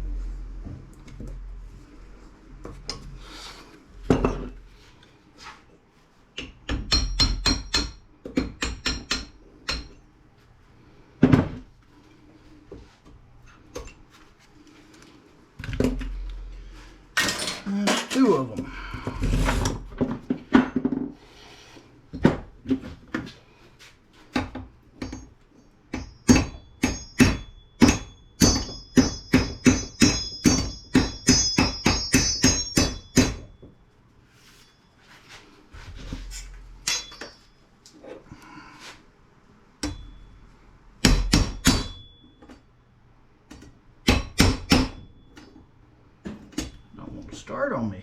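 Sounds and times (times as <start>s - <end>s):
hammer striking metal: 6.4s - 10.0s, 25.9s - 33.6s, 36.8s - 37.6s, 39.8s - 40.3s, 41.0s - 42.3s, 44.0s - 45.2s.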